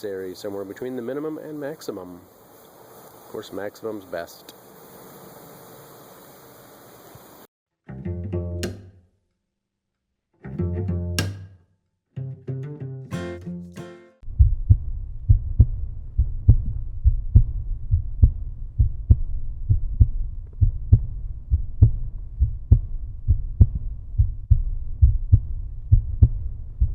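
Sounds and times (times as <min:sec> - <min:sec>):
deep beat with bass line: 0:14.3 - 0:26.9.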